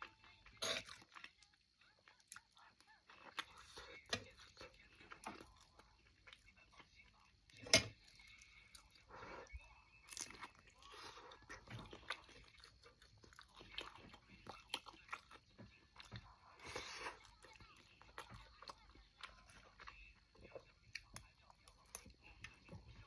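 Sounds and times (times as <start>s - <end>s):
person chewing and biting food: 8.1s - 22.6s.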